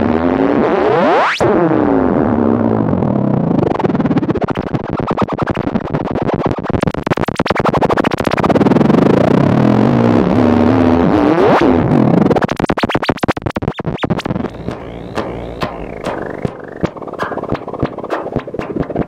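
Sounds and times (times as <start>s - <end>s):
synthesizer clicking pulses: 6.8s - 8.4s, 12.4s - 19.0s
synthesizer tones sweeping upward: 12.5s - 17.0s.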